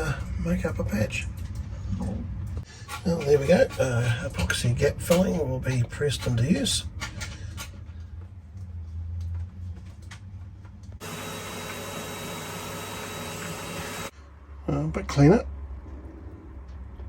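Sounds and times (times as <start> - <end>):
machine motor whirring: 11.0 - 14.1.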